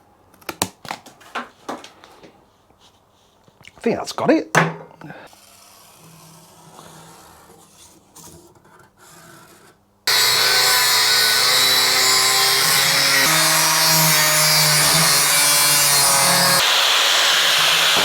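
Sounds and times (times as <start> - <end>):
power tool cutting sheet steel: 10.1 - 18.0.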